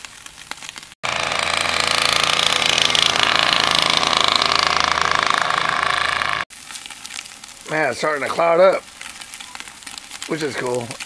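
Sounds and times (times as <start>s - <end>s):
mechanical rattling drone: 1.0s - 6.5s.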